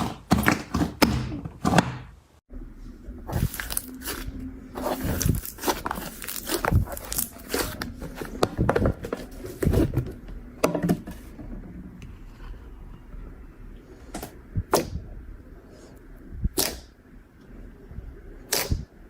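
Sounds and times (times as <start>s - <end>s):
slime squelching by hand: 3.3s - 8.9s.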